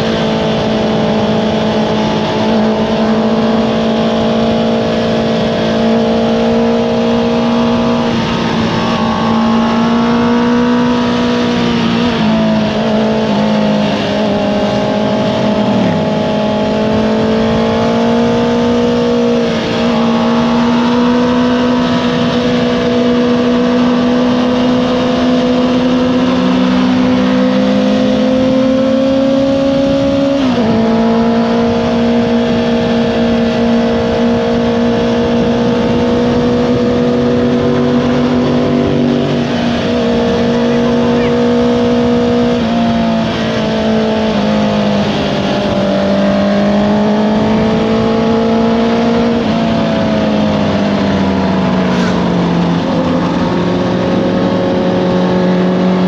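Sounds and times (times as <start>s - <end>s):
motorcycle engine running hard: 0.0s - 56.0s.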